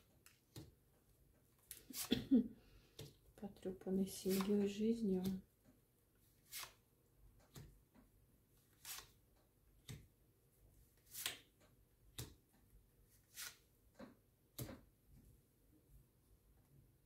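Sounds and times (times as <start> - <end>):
cards clicking on a table: 4.3 - 4.5, 6.5 - 6.8, 11.1 - 11.5, 12.2 - 12.4.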